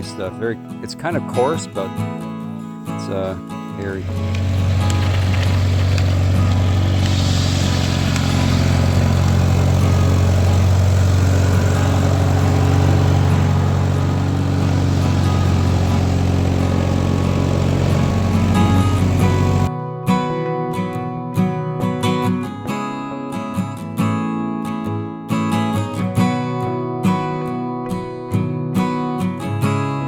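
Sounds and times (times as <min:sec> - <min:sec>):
engine running: 0:03.8 - 0:19.7.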